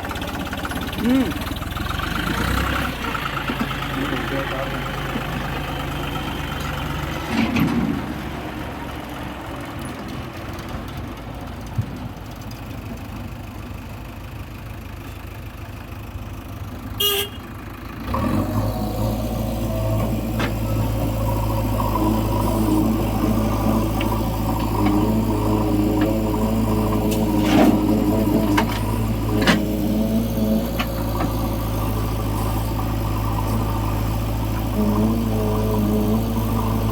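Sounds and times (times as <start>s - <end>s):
diesel machinery engine running: 0.0s - 36.9s
short horn toot: 17.0s - 17.4s.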